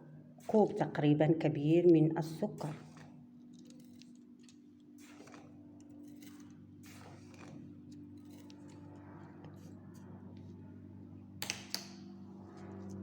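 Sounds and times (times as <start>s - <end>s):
low steady hum: 0.0s - 13.0s
sugar pouring into a pot: 5.0s - 8.8s.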